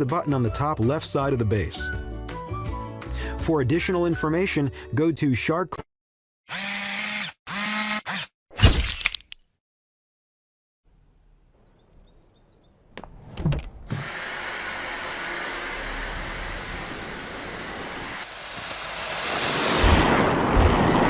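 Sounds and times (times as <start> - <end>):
vacuum cleaner motor running: 13.9 - 19.8.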